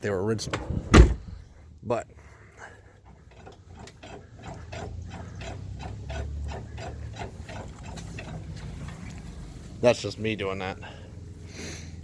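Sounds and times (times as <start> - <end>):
truck suspension creaking: 0.3 - 1.6, 2.6 - 9.6.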